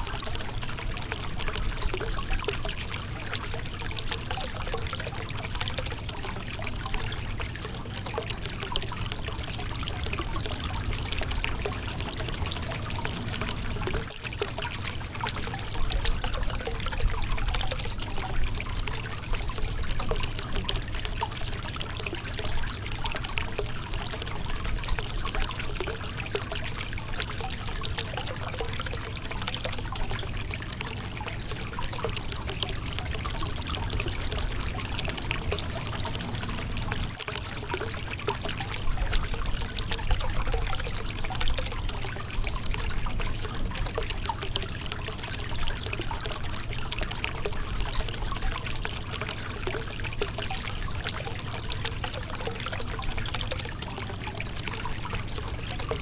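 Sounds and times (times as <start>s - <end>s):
small water splashes: 0.0s - 56.0s.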